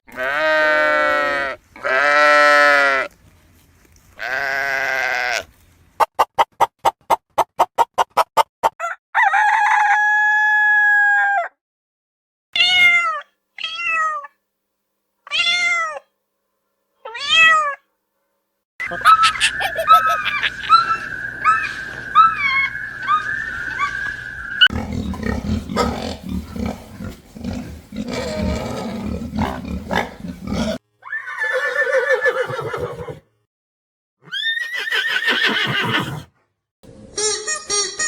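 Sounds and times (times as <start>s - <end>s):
farm animal calls: 18.8s - 33.2s.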